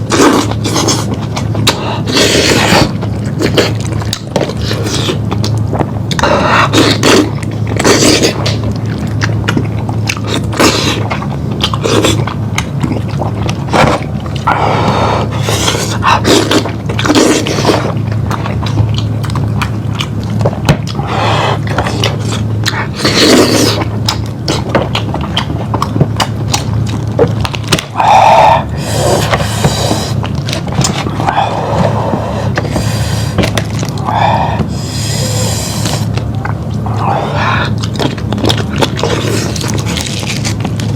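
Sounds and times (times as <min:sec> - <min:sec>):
chewing and biting: 0:00.0 - 0:40.9.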